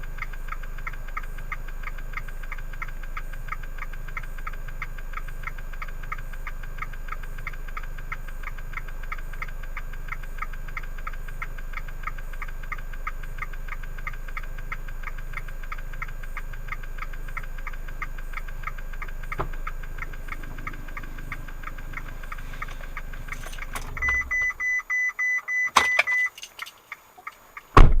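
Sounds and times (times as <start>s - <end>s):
car engine idling: 0.0s - 24.9s
fast even ticking: 14.4s - 24.6s
clicks: 19.0s - 27.7s
high warning chime beeping: 20.2s - 26.8s.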